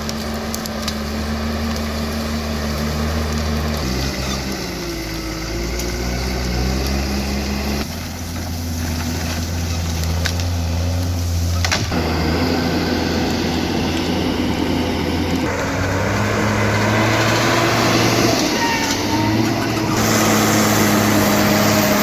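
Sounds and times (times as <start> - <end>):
engine humming steadily: 0.0 - 22.0.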